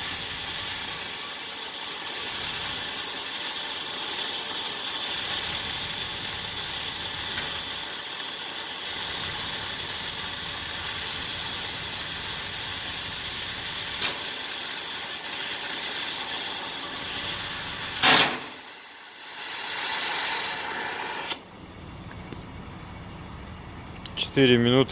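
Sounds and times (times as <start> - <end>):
cutting torch flame hissing: 0.0 - 21.5
short loud burst: 18.0 - 18.8.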